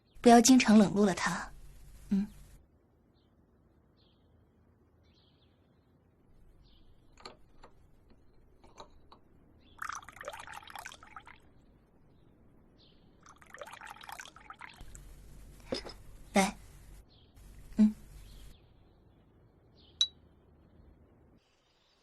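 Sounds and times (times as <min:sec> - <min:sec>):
liquid pouring: 0:06.4 - 0:17.7.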